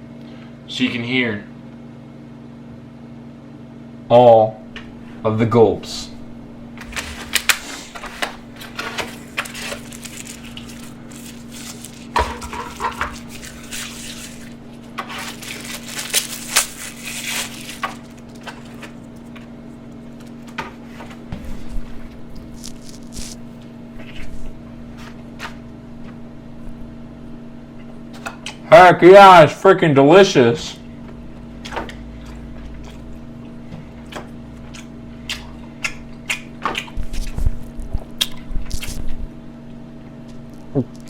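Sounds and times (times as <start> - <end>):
steady low hum: 0.0 - 41.0
crunching and wet chewing: 6.7 - 26.2, 31.3 - 41.0.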